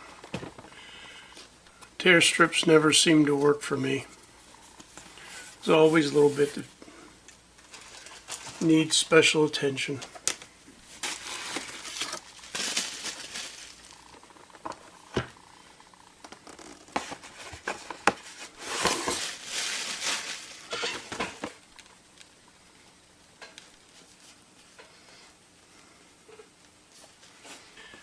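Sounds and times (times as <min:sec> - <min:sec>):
cardboard tearing and rustling: 0:11.0 - 0:14.0, 0:16.3 - 0:21.5.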